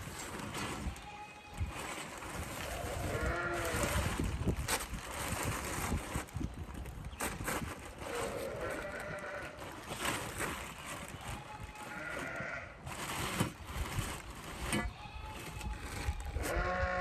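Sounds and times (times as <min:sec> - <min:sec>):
sheep bleating: 0:02.8 - 0:03.9, 0:11.5 - 0:12.8, 0:16.4 - 0:17.0.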